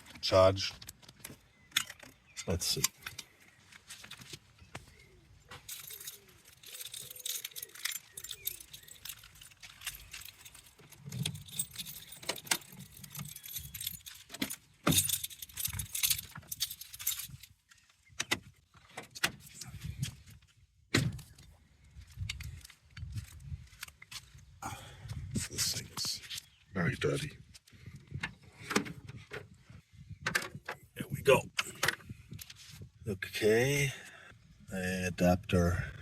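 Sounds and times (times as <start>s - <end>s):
parts clicking and clinking: 5.5s - 20.1s.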